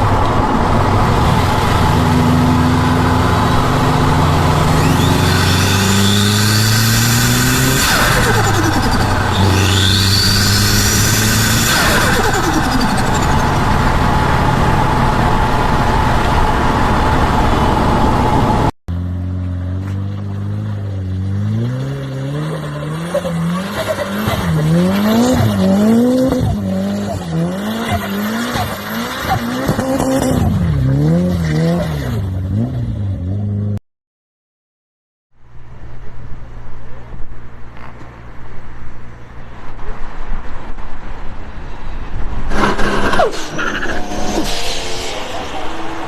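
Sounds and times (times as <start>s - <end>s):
car engine rushing: 0.0s - 33.8s, 35.7s - 46.0s
engine revving: 0.0s - 33.8s.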